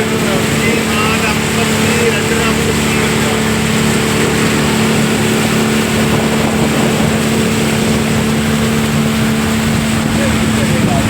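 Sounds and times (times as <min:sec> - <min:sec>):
motorboat engine running: 0:00.0 - 0:11.0
rushing water: 0:00.0 - 0:11.0.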